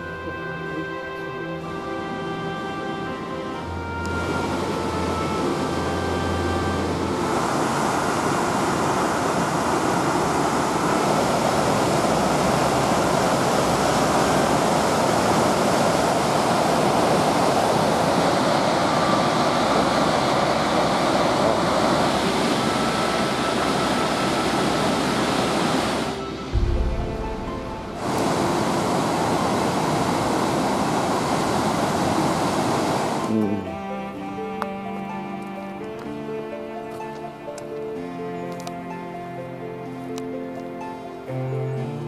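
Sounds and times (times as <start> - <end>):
faint music: 0.0 - 17.9, 18.6 - 30.5, 33.1 - 42.0
waterfall roaring: 1.8 - 34.4.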